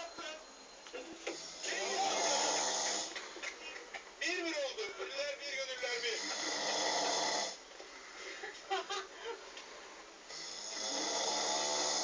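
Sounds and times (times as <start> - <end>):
person snoring: 1.4 - 3.1, 6.2 - 7.6, 10.3 - 12.0.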